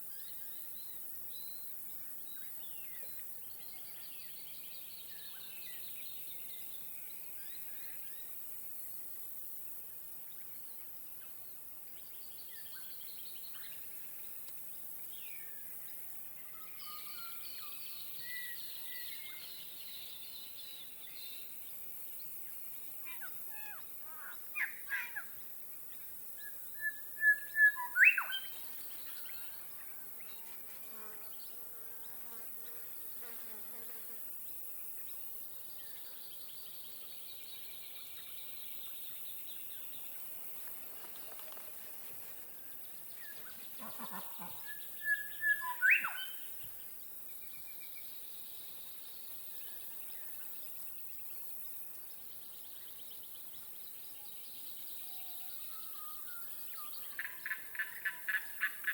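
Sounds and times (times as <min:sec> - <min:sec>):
faint insects buzzing: 0:00.0 - 0:58.9
bird calls: 0:43.1 - 0:46.4.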